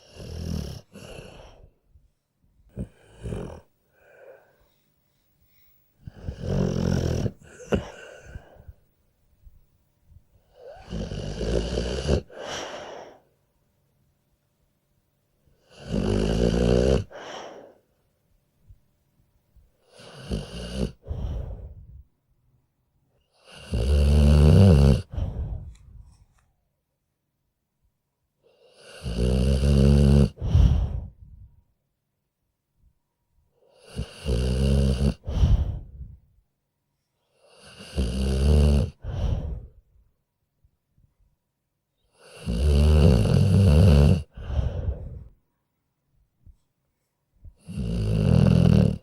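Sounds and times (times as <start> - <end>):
dog snoring: 0.0 - 1.8, 2.7 - 4.4, 6.0 - 8.8, 10.5 - 13.2, 15.6 - 17.8, 19.8 - 22.0, 23.3 - 25.8, 28.5 - 31.2, 33.7 - 36.2, 37.3 - 39.8, 42.1 - 45.4, 47.6 - 49.0.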